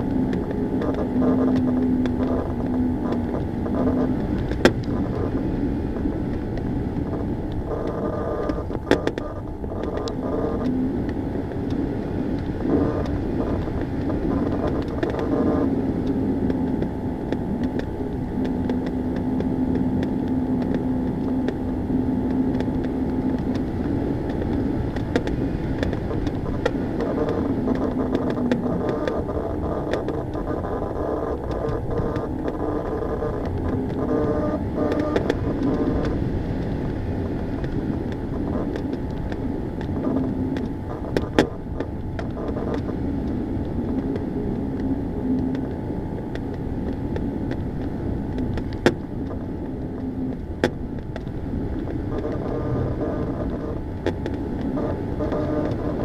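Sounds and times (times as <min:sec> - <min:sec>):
low drone: 0:00.0 - 0:56.0
sharp clicks: 0:12.4 - 0:36.7.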